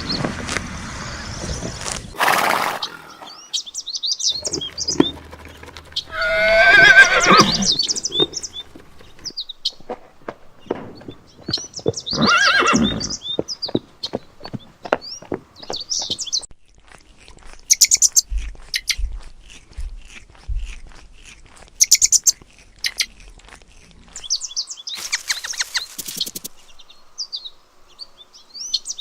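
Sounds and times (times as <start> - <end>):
small birds chirping: 2.8 - 29.0
horse snorting: 4.4 - 9.3
horse whinnying: 6.0 - 8.4, 12.1 - 13.2.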